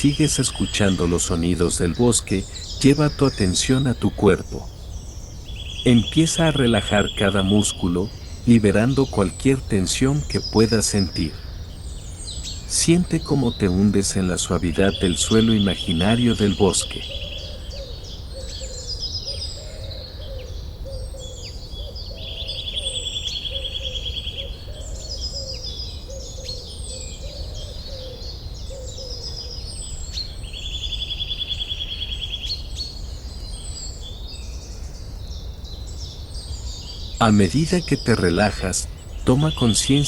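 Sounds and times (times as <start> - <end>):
buzzy bird trill: 0.0 - 19.8, 29.0 - 40.0
low repeated bird call: 0.0 - 40.0
songbirds chirping: 0.0 - 40.0.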